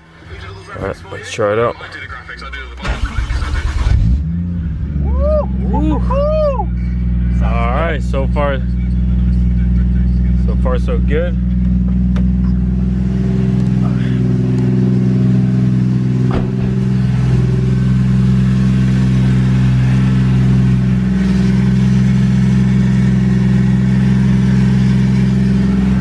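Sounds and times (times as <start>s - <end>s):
car engine idling fast: 5.2s - 26.0s.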